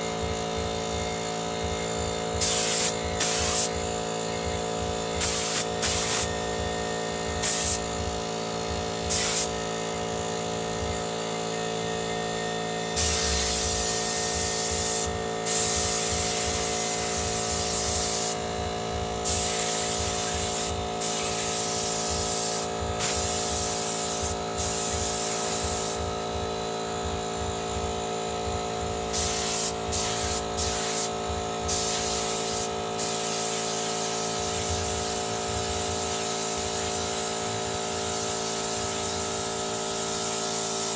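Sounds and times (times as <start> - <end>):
air compressor humming: 0.0 - 40.9
compressed air hissing: 2.4 - 3.8, 5.2 - 6.3, 7.4 - 7.9, 9.1 - 9.6, 13.0 - 18.6, 19.2 - 26.0, 29.1 - 40.9.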